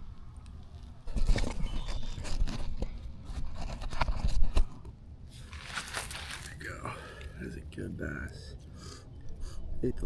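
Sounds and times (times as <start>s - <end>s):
knocks and scrapes of handling fish: 1.1s - 4.8s.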